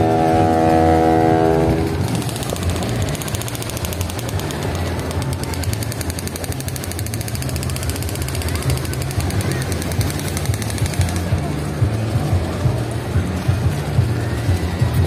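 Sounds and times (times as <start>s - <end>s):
horn-like chord: 0.0s - 2.2s
low engine drone: 0.0s - 15.0s
fast mechanical rattle: 1.8s - 13.7s.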